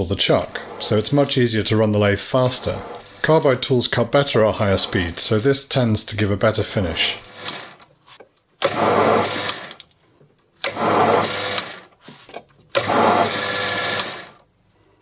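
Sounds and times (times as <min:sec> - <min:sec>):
mini lathe running: 0:02.4 - 0:03.4, 0:07.2 - 0:07.8, 0:08.6 - 0:09.8, 0:10.6 - 0:11.8, 0:12.8 - 0:14.3.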